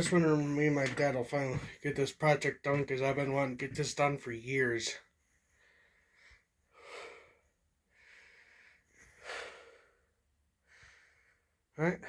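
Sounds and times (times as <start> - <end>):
person breathing close to microphone: 5.5 - 11.5.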